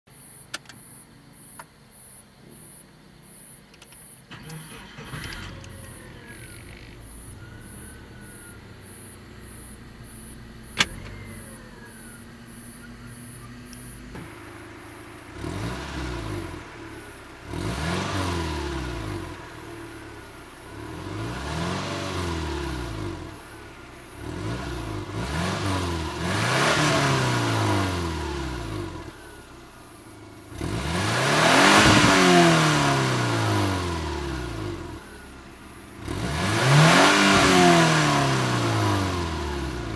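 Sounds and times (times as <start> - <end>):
car engine idling: 0.2 - 39.9
sharp click: 0.5 - 0.9, 3.7 - 4.6, 10.7 - 11.2
car engine revving: 4.3 - 39.9.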